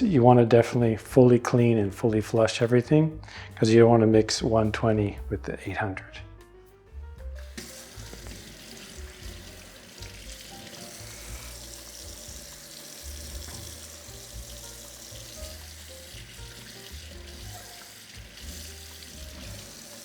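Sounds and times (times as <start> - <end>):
tap water running: 7.2 - 20.0.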